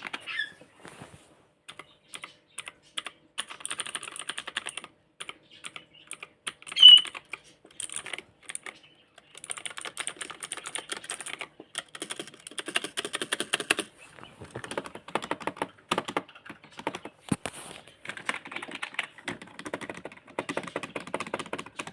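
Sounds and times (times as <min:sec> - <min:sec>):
fast typing on keyboard: 0:00.0 - 0:00.3, 0:01.7 - 0:17.2, 0:18.0 - 0:21.9
high-pitched chirp: 0:05.6 - 0:07.3.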